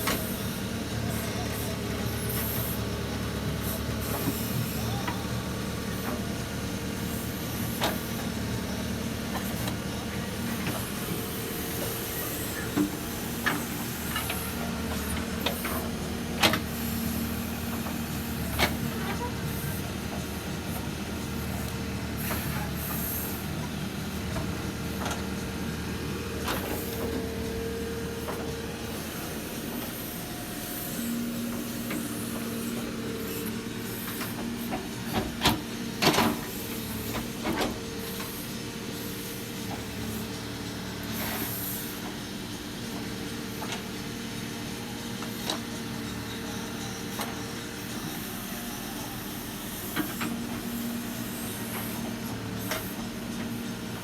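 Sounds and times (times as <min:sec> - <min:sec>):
backhoe diesel engine running: 0:00.0 - 0:54.0.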